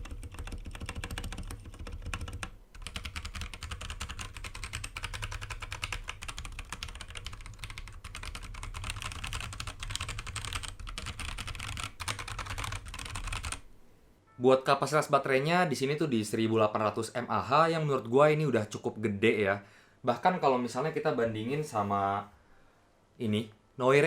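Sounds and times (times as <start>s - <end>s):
mechanical keyboard typing: 0.0s - 13.6s.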